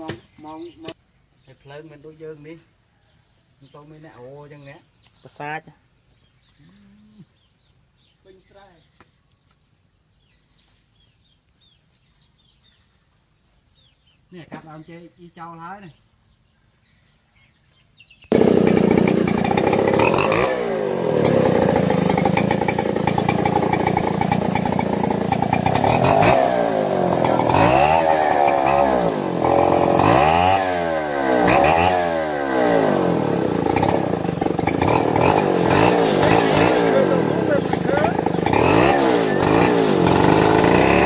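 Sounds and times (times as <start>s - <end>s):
chainsaw engine running: 18.3s - 41.0s.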